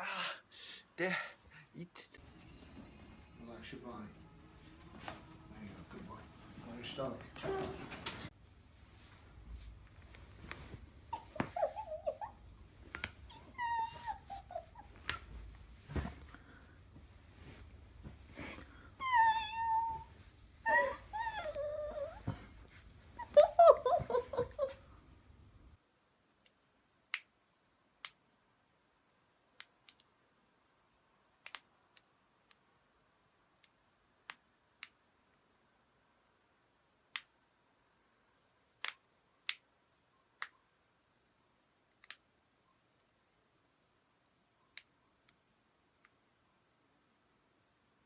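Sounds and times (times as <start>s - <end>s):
dog whining: 11.1s - 15.4s, 19.0s - 22.5s.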